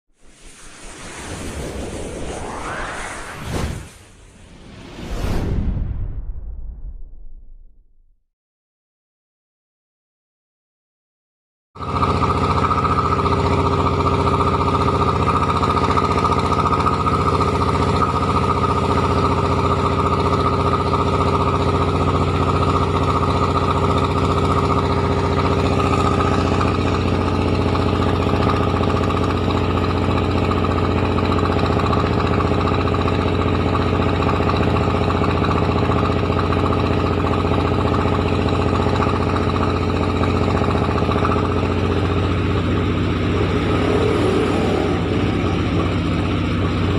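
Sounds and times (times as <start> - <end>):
milling machine drone and whine: 11.9 - 46.9.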